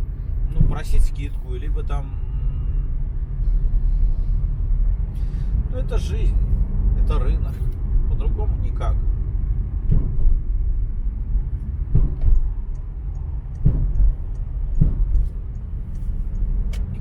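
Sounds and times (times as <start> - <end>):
steady low rumble: 0.0 - 17.0
short knocks: 11.9 - 12.8, 13.5 - 15.3.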